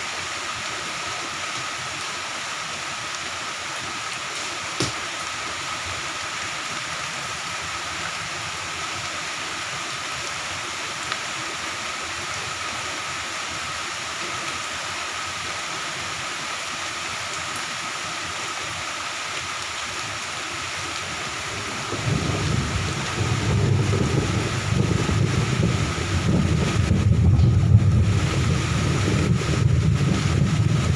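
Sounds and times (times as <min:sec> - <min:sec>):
heavy rain hissing: 0:00.0 - 0:30.9
loud low rumble: 0:23.5 - 0:30.9.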